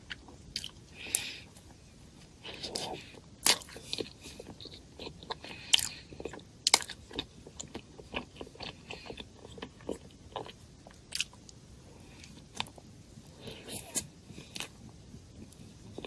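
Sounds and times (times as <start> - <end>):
person biting and chewing food: 0.0 - 1.8, 2.4 - 11.6.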